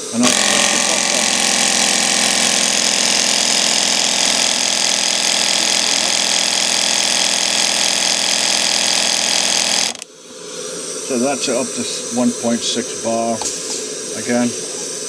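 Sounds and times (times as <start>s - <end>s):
tire inflator running: 0.0s - 10.1s.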